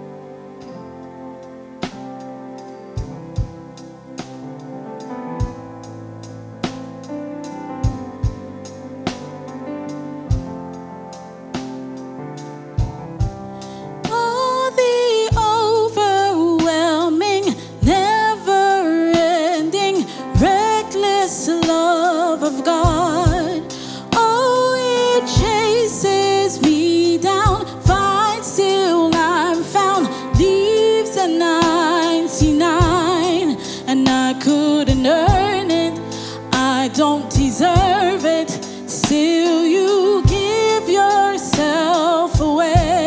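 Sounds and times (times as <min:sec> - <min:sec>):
keyboard chords: 0:00.0 - 0:43.0
drum beats: 0:03.0 - 0:04.4, 0:05.4 - 0:07.2, 0:07.8 - 0:09.6, 0:10.2 - 0:10.8, 0:12.8 - 0:14.3, 0:22.8 - 0:23.6, 0:25.4 - 0:25.8, 0:26.6 - 0:28.4, 0:30.4 - 0:30.9, 0:31.6 - 0:33.4, 0:34.9 - 0:43.0
person singing with vibrato: 0:13.8 - 0:43.0.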